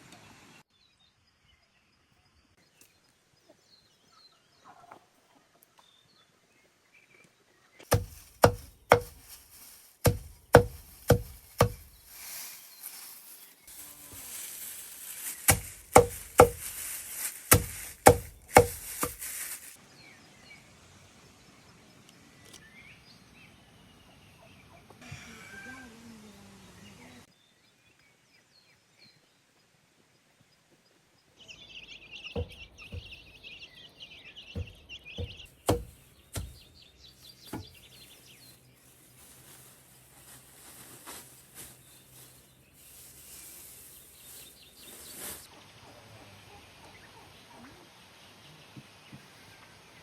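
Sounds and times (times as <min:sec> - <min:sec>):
rustling: 0:07.8 - 0:19.8, 0:34.6 - 0:45.5
blade chopping wood: 0:07.9 - 0:09.2, 0:10.0 - 0:12.0, 0:15.5 - 0:16.8, 0:17.5 - 0:19.2, 0:32.4 - 0:33.2, 0:34.6 - 0:36.6.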